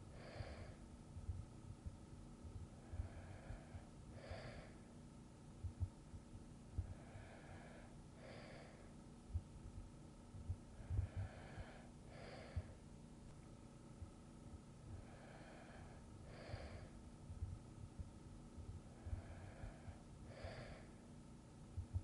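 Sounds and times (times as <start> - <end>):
person breathing softly: 0.0 - 1.4, 2.8 - 5.0, 6.7 - 9.0, 10.5 - 12.9, 14.8 - 17.6, 18.8 - 21.2
faint low thuds: 1.2 - 2.7, 16.6 - 19.9.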